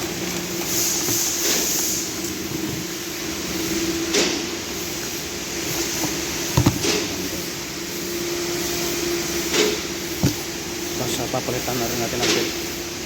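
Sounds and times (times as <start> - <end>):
mechanical hum: 0.0 - 13.0
sharp knocks: 6.6 - 7.1, 10.2 - 10.5.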